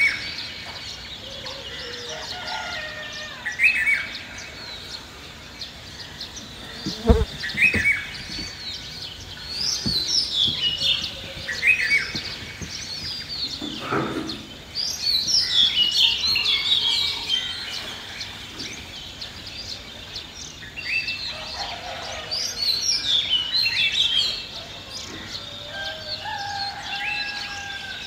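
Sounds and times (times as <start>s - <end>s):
birds chirping and calling: 0.0s - 28.0s
low thump: 9.6s - 13.4s.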